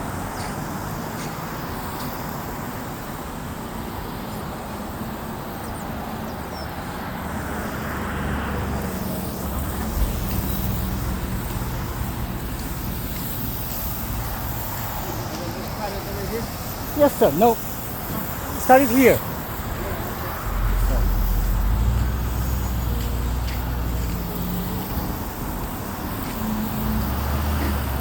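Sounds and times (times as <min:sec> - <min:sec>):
engine humming: 0:07.6 - 0:28.0.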